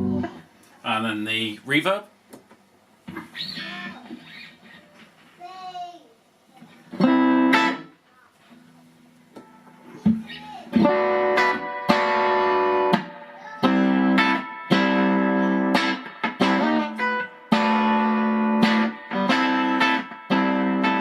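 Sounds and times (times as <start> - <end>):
electric guitar chords strummed: 0.0 - 0.4, 6.9 - 8.0, 9.4 - 21.0.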